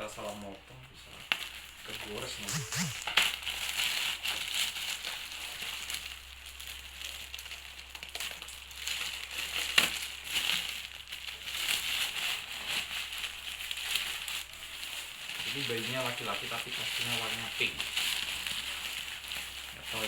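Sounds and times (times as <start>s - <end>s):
sharp click: 2.5s - 3.0s
plastic packaging crinkling: 3.8s - 20.0s.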